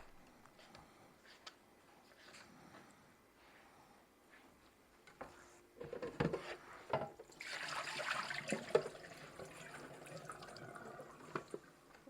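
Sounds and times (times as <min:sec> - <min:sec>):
running water: 0:07.3 - 0:11.8.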